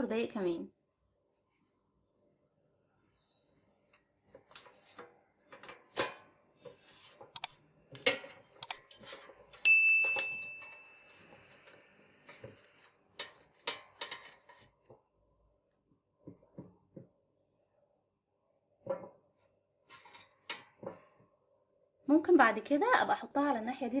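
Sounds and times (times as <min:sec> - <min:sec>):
air fryer basket clinks: 0:09.7 - 0:10.8
air fryer ding: 0:09.7 - 0:11.1.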